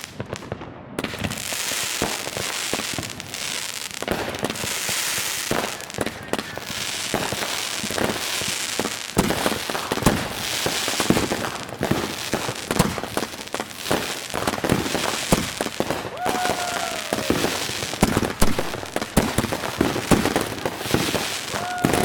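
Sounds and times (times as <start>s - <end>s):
fireworks crackling: 0.0s - 22.0s
fireworks booming: 14.0s - 22.0s.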